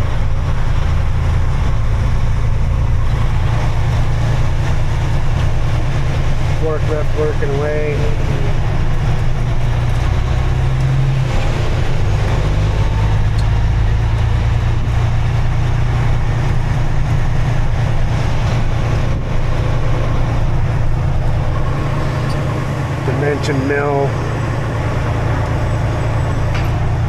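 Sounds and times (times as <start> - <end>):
vehicle engine and road noise: 0.0 - 27.0.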